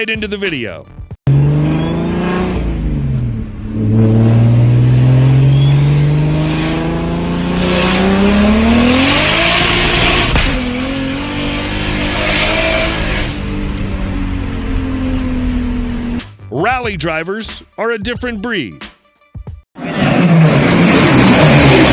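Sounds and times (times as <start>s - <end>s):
car engine accelerating: 1.3s - 16.2s, 19.8s - 21.9s.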